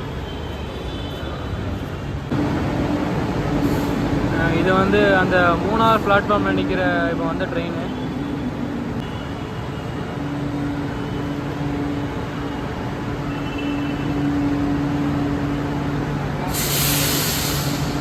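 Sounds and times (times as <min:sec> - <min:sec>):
train equipment low hum: 0:02.3 - 0:06.8
loud hiss of released air: 0:03.6 - 0:04.2, 0:16.4 - 0:18.0.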